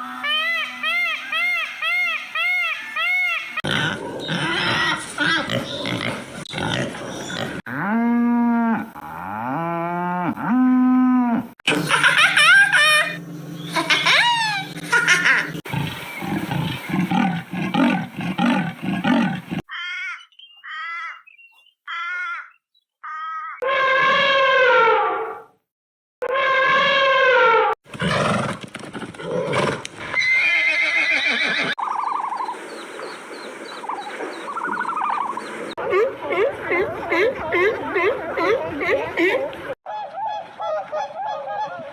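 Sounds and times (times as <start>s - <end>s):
animal calls: 0.0s - 6.1s
horse whinnying: 29.2s - 31.8s.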